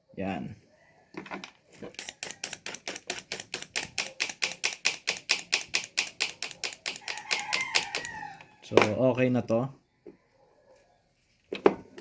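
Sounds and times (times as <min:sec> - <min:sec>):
fuel injector clicking rapidly: 0:02.0 - 0:08.1.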